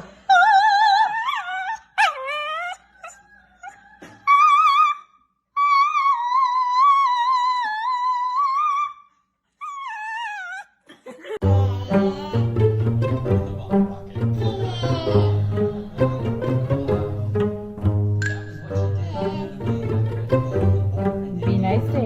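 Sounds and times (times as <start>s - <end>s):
dog howling: 0.3s - 10.8s.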